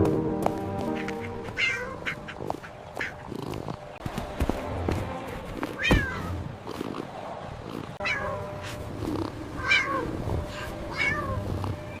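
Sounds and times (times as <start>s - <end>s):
cat meowing: 1.6s - 2.2s, 5.8s - 6.3s, 9.6s - 10.1s, 10.9s - 11.4s.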